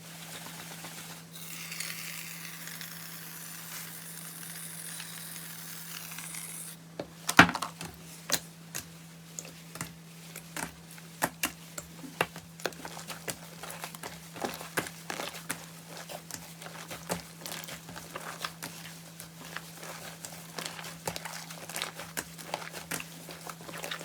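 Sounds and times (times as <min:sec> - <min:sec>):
slime fizzing crackle: 0:12.8 - 0:24.0.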